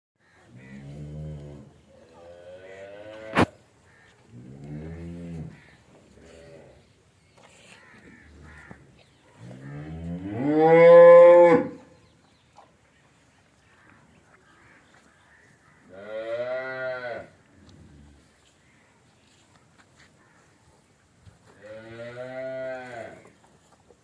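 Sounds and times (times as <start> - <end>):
cow mooing: 9.5 - 11.8, 21.7 - 23.2.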